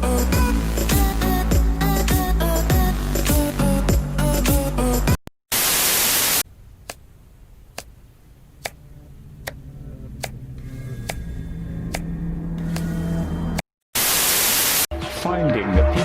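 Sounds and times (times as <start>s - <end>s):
music: 0.0s - 5.2s, 14.9s - 16.0s
static-like hiss burst: 5.5s - 6.4s, 14.0s - 14.9s
low hum: 6.5s - 13.6s.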